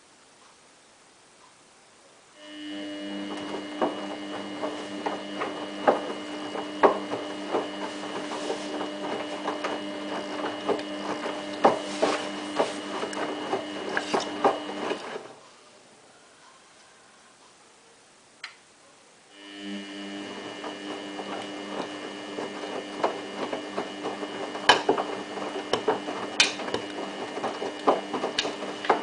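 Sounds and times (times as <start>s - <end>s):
washing machine motor hum: 2.4s - 15.5s, 19.3s - 29.0s.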